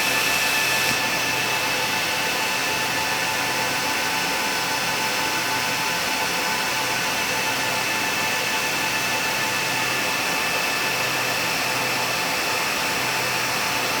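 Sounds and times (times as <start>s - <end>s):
cooling fans whirring: 0.0s - 1.2s.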